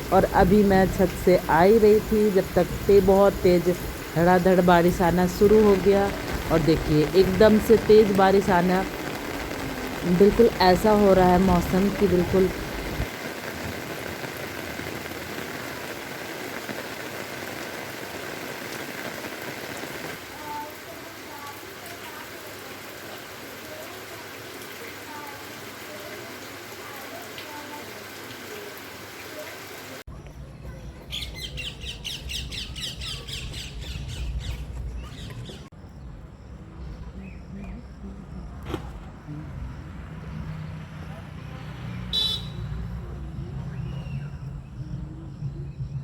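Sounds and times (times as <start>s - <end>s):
heavy rain pouring: 0.0s - 30.1s.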